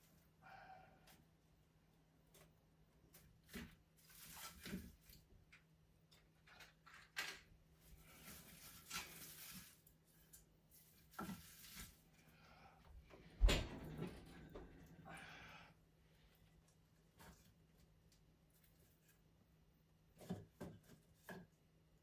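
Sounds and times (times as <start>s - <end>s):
knocks and clicks of fireplace work: 13.1s - 14.9s.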